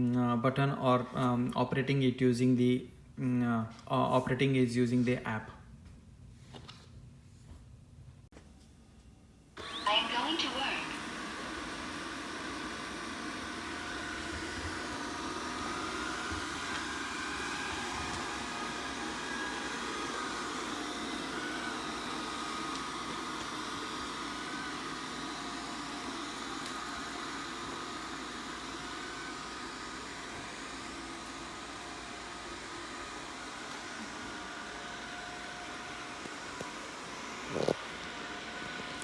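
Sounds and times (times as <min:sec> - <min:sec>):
robot vacuum whirring: 0:09.6 - 0:39.0.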